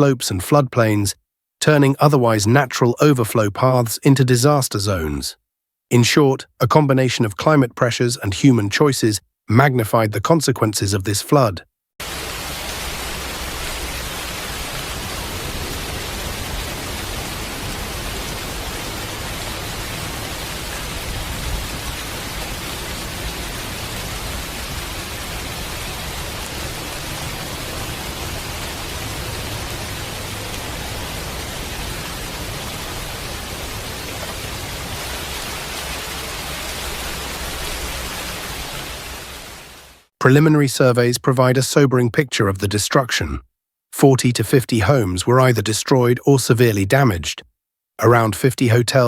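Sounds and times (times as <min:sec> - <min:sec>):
water rushing: 0:12.0 - 0:40.1.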